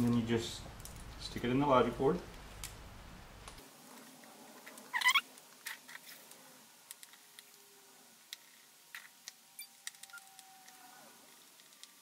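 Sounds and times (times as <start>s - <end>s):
short loud squeak: 4.9s - 5.2s.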